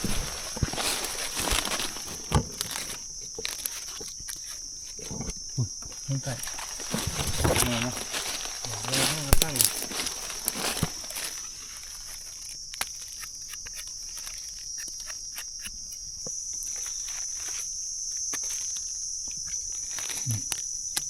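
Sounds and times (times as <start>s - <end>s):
footsteps in dry leaves: 0.0s - 4.5s, 6.4s - 13.2s
insects droning: 0.0s - 21.0s.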